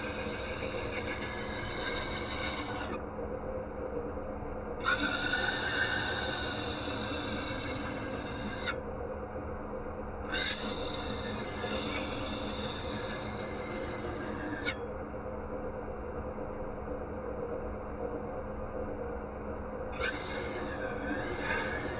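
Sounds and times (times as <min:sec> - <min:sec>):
steel grinding on belt grinder: 0:00.0 - 0:03.0, 0:04.8 - 0:08.8, 0:10.3 - 0:14.8, 0:20.0 - 0:21.9
grinder motor humming: 0:20.0 - 0:21.9.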